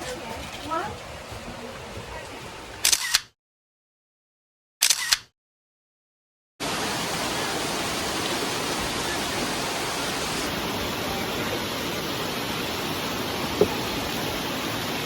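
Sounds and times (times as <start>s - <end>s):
rushing water: 0.0s - 2.8s, 6.6s - 15.0s.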